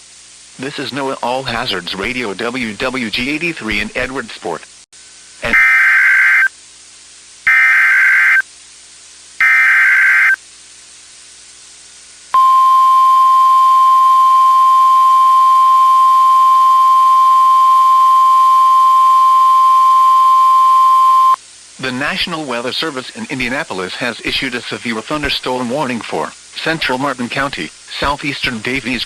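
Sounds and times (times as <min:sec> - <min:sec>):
steady warning alarm tone: 0:05.4 - 0:06.5, 0:07.5 - 0:08.4, 0:09.4 - 0:10.4, 0:12.4 - 0:21.4
warbling data tones: 0:05.4 - 0:06.5, 0:07.5 - 0:08.4, 0:09.4 - 0:10.4.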